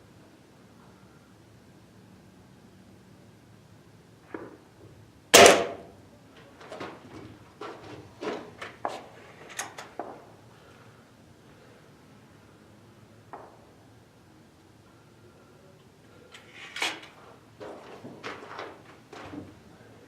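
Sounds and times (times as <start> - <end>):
air rifle firing: 5.3 - 5.9.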